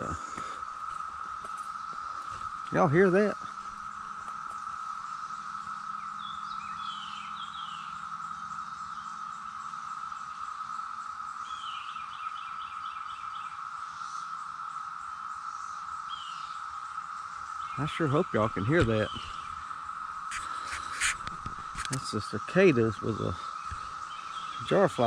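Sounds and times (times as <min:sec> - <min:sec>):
cicadas droning: 0:00.0 - 0:25.0
bird chirping: 0:05.9 - 0:08.1, 0:17.6 - 0:19.6, 0:20.2 - 0:25.0.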